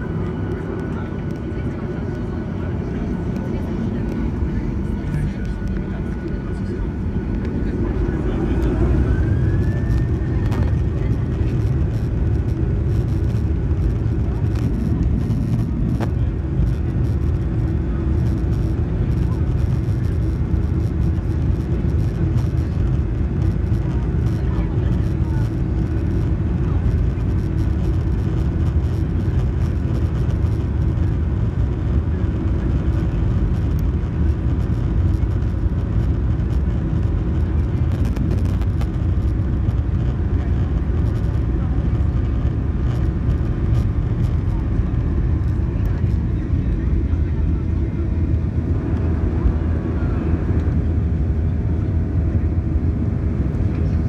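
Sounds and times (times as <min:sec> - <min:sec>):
airplane cabin rumble and hum: 0:00.0 - 0:54.0.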